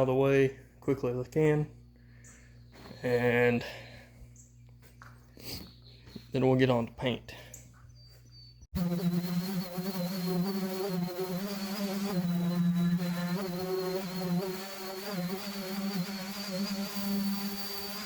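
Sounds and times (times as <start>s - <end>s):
electric sander buzzing with whine: 8.7s - 18.0s.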